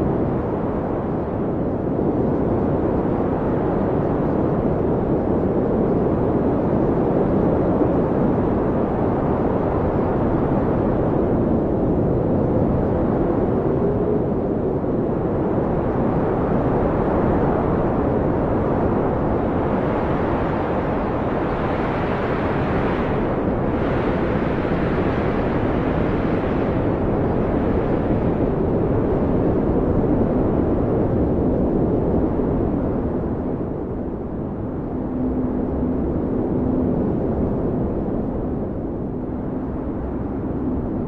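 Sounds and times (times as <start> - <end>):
blizzard wind howling: 0.0 - 41.0.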